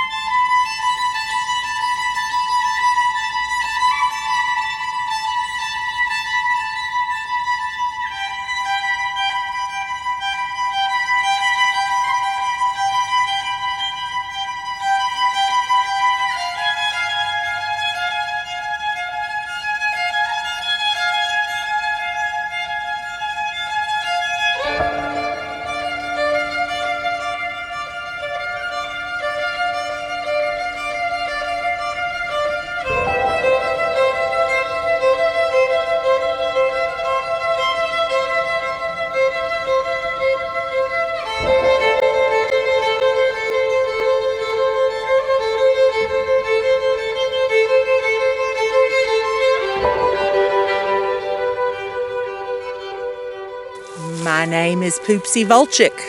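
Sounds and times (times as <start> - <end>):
slow violin chords: 24.0 - 56.0.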